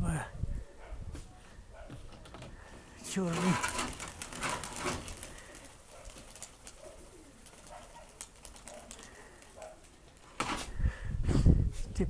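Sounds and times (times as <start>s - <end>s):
pigeons cooing: 2.4s - 10.6s.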